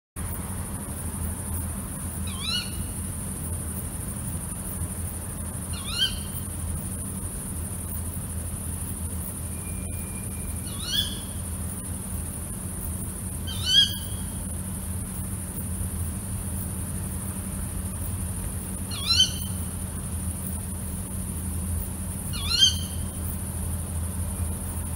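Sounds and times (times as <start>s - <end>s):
steady low hum: 0.2s - 24.9s
owl kewick call: 2.2s - 3.0s, 5.7s - 6.4s, 9.5s - 11.5s, 13.4s - 14.4s, 18.9s - 19.7s, 22.3s - 23.2s.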